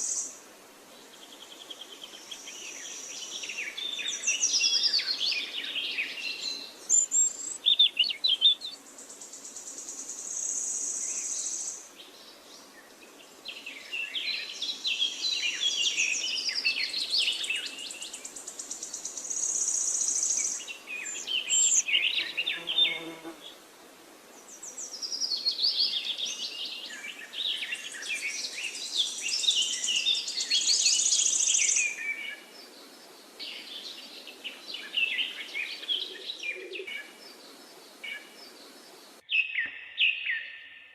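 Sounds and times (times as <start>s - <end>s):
songbirds chirping: 0.0s - 40.9s.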